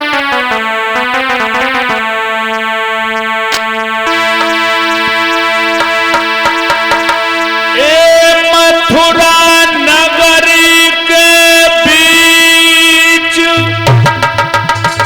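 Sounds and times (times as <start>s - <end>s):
sustained synthesizer chords: 0.0s - 11.6s.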